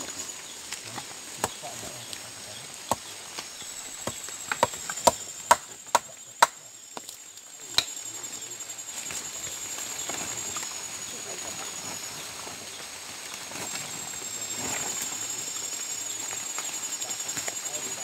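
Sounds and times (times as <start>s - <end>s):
blade chopping wood: 0.8s - 1.6s, 2.8s - 7.2s.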